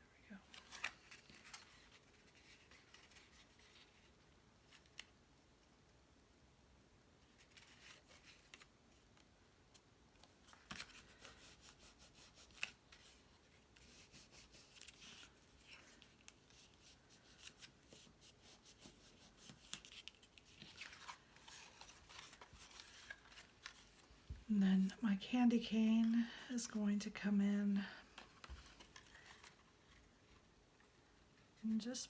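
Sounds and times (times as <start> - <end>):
cardstock rustling: 10.3 - 24.4.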